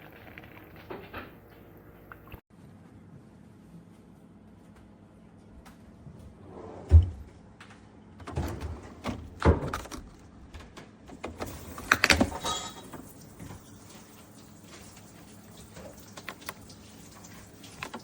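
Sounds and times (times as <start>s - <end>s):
handling knocks and clunks: 8.2s - 13.6s.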